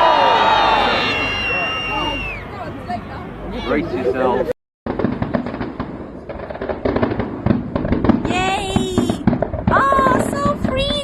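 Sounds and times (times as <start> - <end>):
fireworks bangs and crackling: 4.9 - 11.0.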